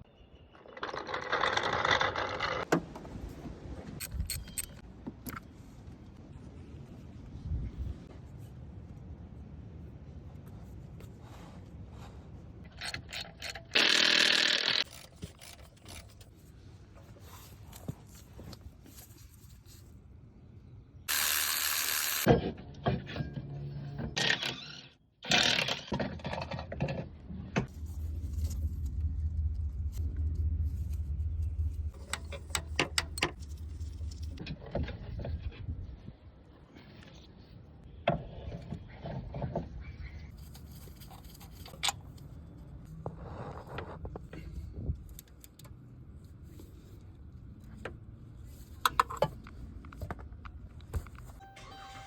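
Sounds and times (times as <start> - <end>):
steady low hum: 27.6 - 34.4.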